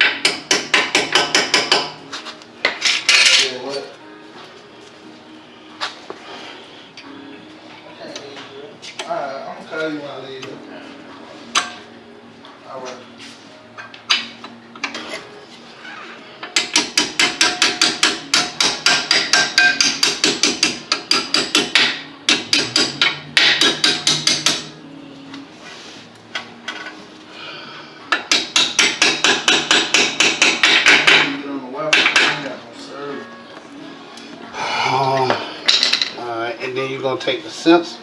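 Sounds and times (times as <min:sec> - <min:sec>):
hammer striking metal rapidly: 0:16.6 - 0:24.7, 0:28.2 - 0:32.4.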